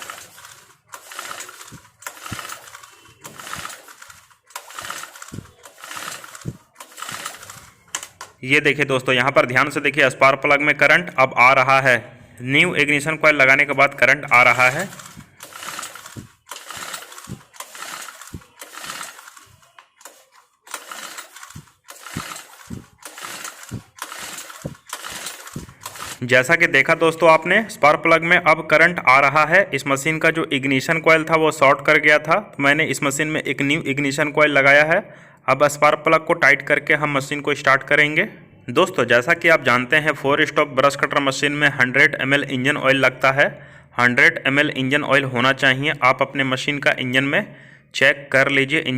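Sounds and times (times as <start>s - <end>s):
pull-starter cord whirring and ratcheting: 0.0s - 8.4s, 14.4s - 26.3s.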